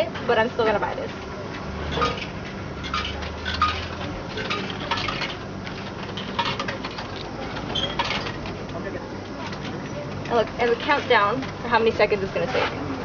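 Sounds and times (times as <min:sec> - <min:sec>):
coins clinking into vending machine: 0:02.0 - 0:08.4.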